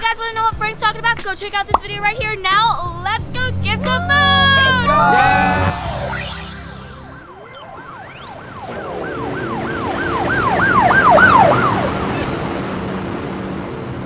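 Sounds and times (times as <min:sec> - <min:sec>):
police siren yelping: 0:03.8 - 0:12.6
rising siren sweep: 0:04.0 - 0:13.6.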